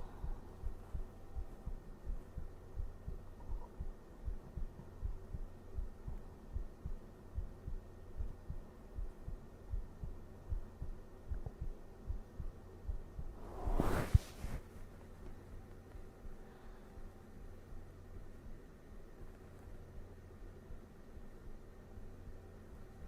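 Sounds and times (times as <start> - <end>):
heartbeat thumps: 0.0 - 14.6, 15.5 - 18.6
faint low hum: 0.0 - 23.0.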